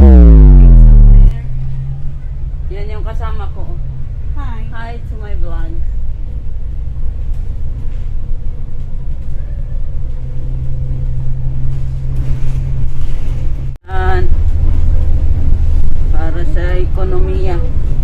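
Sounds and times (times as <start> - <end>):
steady low hum: 0.0 - 2.3
road vehicle rumble: 0.0 - 18.0.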